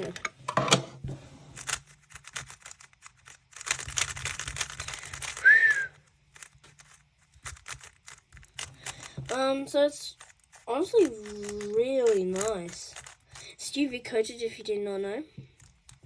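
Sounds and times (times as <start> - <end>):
crackling and rustling: 1.0 - 16.0
sharp plastic clicks: 1.6 - 13.8.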